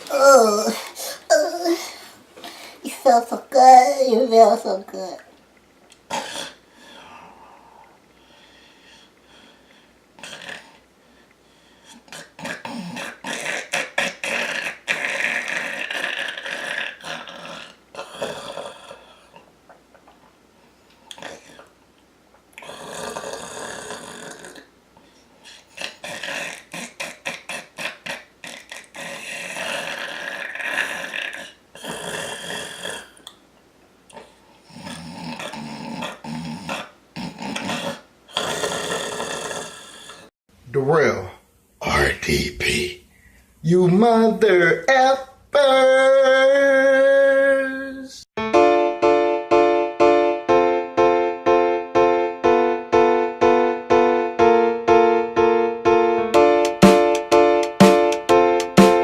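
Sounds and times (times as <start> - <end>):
man snoring: 12.1 - 19.4, 22.6 - 24.7, 25.8 - 33.2, 34.7 - 40.3.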